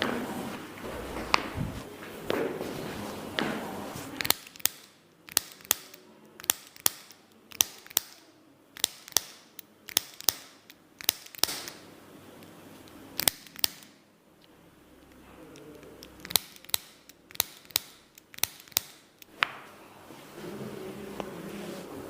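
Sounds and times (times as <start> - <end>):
sharp clicks: 4.2 - 11.9, 12.8 - 19.3.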